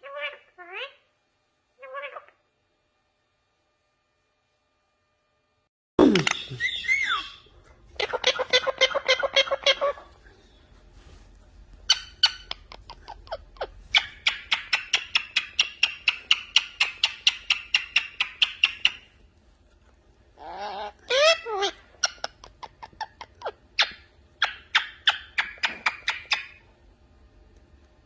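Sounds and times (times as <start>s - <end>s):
parrot squawking and chattering: 0.0s - 1.1s, 1.8s - 2.4s, 6.0s - 10.2s, 11.8s - 19.1s, 20.4s - 26.6s
parrot clicking calls: 11.9s - 19.1s, 20.7s - 26.6s.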